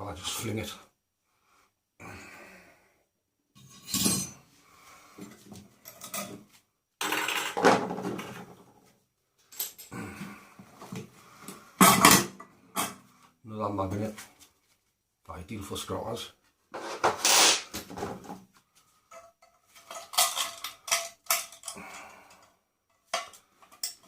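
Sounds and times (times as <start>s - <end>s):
scrap metal parts clanking: 19.7s - 21.8s.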